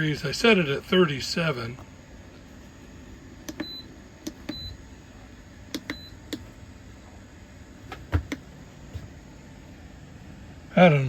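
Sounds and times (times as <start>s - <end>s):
button clicks: 5.7s - 6.4s.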